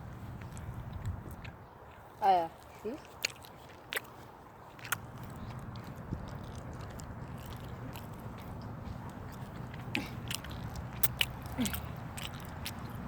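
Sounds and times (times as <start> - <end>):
chewing and crunching food: 0.0 - 13.0.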